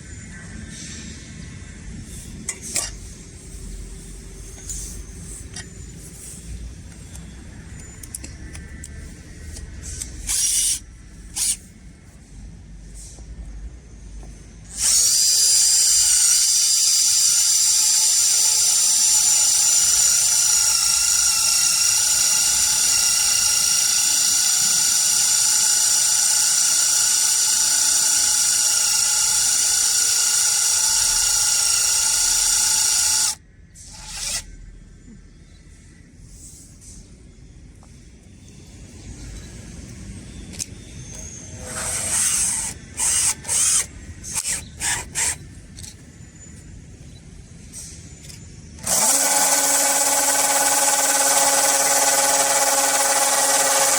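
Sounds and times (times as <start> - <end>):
electric drill whining: 14.7 - 34.5, 41.8 - 45.4, 48.8 - 53.9.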